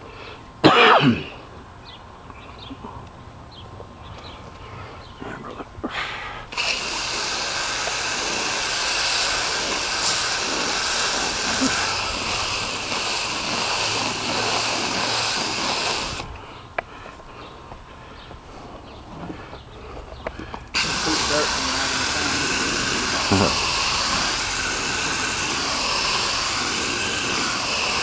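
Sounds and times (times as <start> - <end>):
hiss of liquid spray: 6.5 - 16.3, 20.7 - 28.0.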